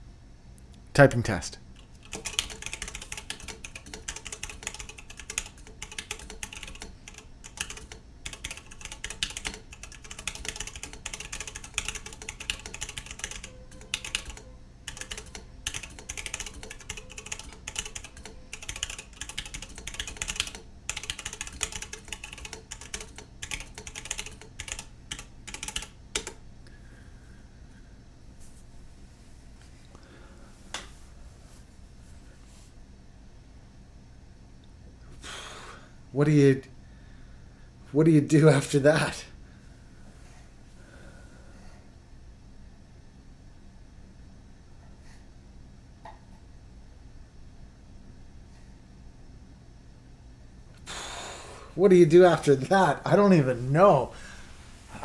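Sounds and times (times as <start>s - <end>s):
mechanical keyboard typing: 1.8s - 26.4s.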